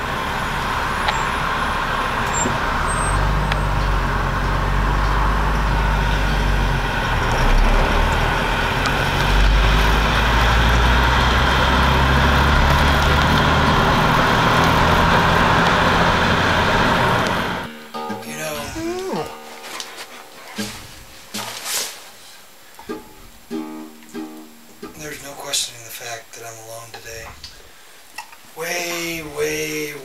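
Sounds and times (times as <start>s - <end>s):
vehicle engine humming: 0.0s - 21.6s
road noise: 0.0s - 30.0s.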